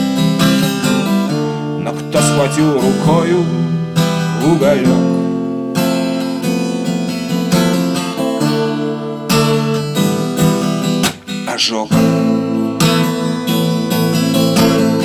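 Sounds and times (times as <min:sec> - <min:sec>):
strummed acoustic guitar: 0:00.0 - 0:15.0
person singing: 0:01.8 - 0:05.2, 0:11.5 - 0:12.3.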